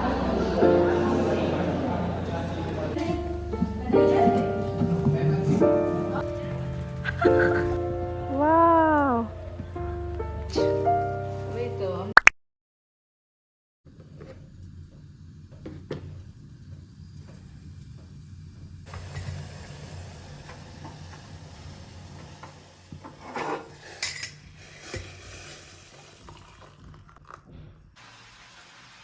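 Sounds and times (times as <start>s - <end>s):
steady hiss: 14.0s - 26.2s, 28.0s - 29.0s
utensils and pan clinking: 22.2s - 25.8s.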